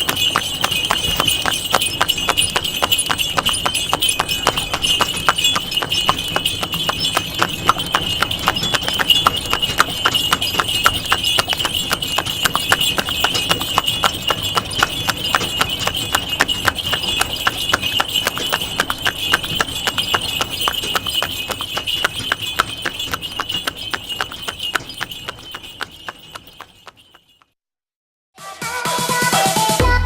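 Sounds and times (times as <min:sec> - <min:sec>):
horse hooves clip-clopping: 0:00.0 - 0:27.6.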